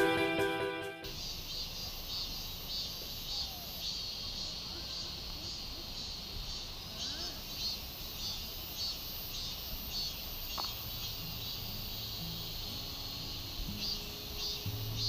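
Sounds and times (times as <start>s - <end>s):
quiet background music: 0.0s - 1.1s, 10.9s - 15.0s
insects chirping: 1.0s - 15.0s.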